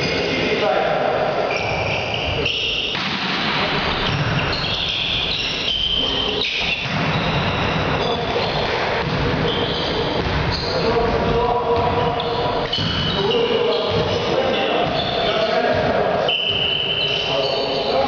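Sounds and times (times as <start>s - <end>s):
sports hall din: 0.0s - 18.0s
shoe squeaks: 1.3s - 3.0s, 3.9s - 11.1s, 12.0s - 18.0s.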